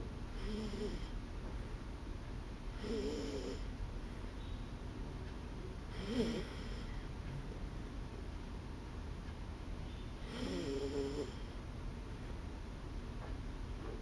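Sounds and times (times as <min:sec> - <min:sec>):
dog snoring: 0:00.4 - 0:01.1, 0:02.8 - 0:03.7, 0:05.9 - 0:06.9, 0:10.2 - 0:11.5.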